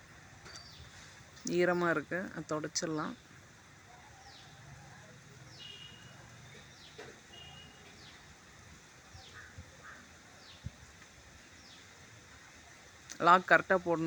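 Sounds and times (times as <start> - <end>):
bird chirping faintly: 3.9 - 8.3.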